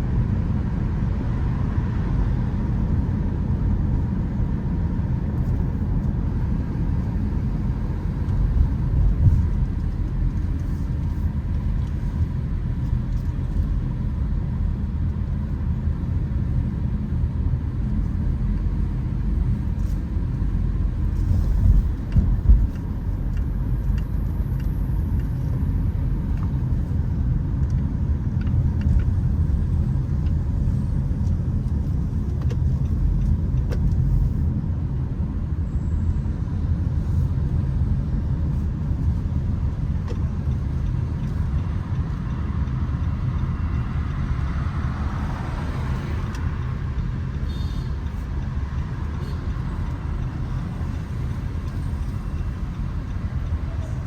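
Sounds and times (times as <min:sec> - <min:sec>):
car engine and road noise: 0:00.0 - 0:54.0.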